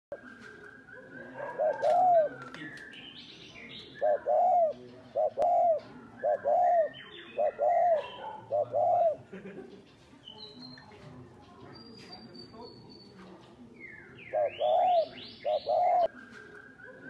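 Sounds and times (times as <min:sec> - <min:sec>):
small birds chirping: 0:00.1 - 0:17.0
dove cooing: 0:00.9 - 0:02.8, 0:03.6 - 0:09.4, 0:14.2 - 0:16.1.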